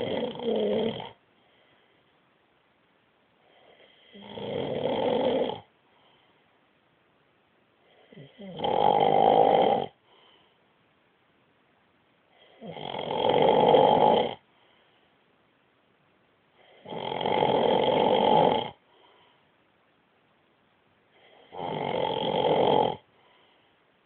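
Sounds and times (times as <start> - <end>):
man snoring loudly: 0.0 - 1.2, 3.7 - 5.7, 8.1 - 10.0, 12.5 - 14.4, 16.8 - 18.8, 21.4 - 23.0.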